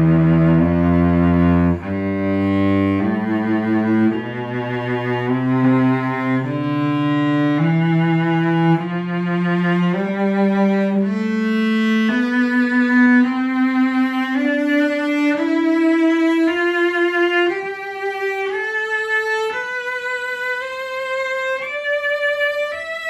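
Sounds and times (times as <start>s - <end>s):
bowed cello notes: 0.0s - 23.0s.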